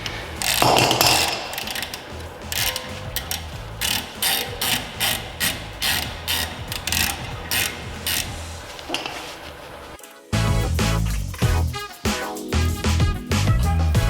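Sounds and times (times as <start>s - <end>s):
ratchet wrench clicking: 0.0s - 9.6s.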